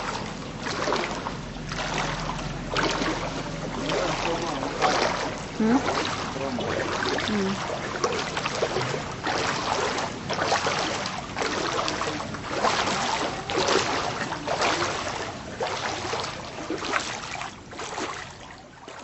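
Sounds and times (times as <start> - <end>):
floodwater sloshing and splashing: 0.0 - 19.0.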